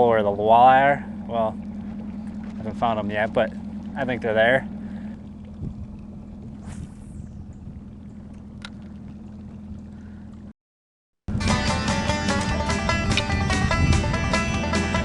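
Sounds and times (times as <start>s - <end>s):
steady low hum: 0.0s - 10.6s
faint swish: 6.5s - 7.6s
banjo bluegrass music: 11.3s - 15.0s.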